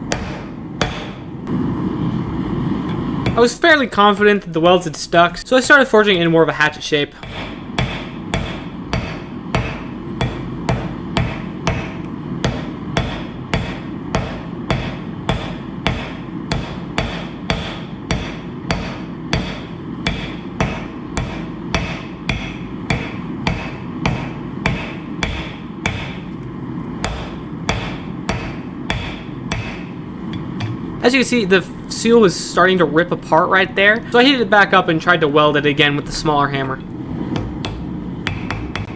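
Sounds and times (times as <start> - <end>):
hammer on hot steel on anvil: 0.0 - 1.3, 7.2 - 26.4, 27.0 - 31.0, 37.4 - 38.9.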